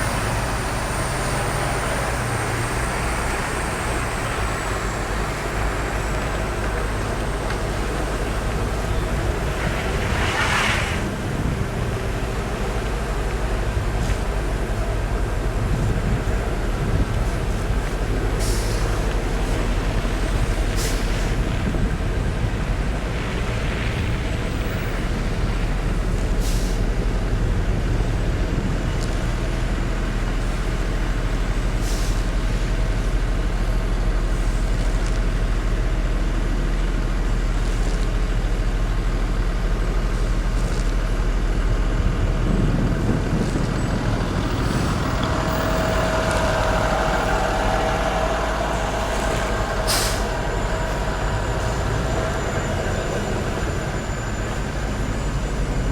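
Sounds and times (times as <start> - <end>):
heavy vehicle engine running: 0.0 - 55.9
air brake hisses: 18.4 - 19.0, 20.7 - 21.3, 26.4 - 26.9, 31.8 - 32.3, 44.6 - 53.4
steady mid-pitched tone: 42.0 - 55.9.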